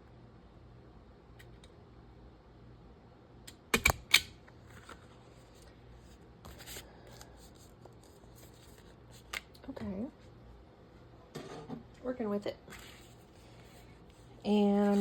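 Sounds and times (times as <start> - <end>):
stapler snapping shut: 3.5 - 4.4
paper rustling: 12.7 - 15.0.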